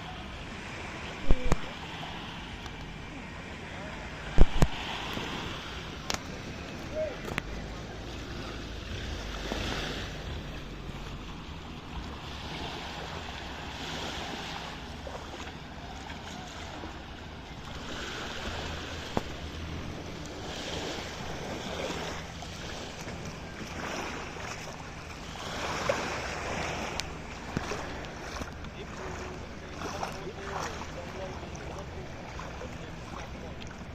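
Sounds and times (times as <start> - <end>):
sea waves washing in: 0.0 - 33.9
wind on microphone: 4.2 - 15.3.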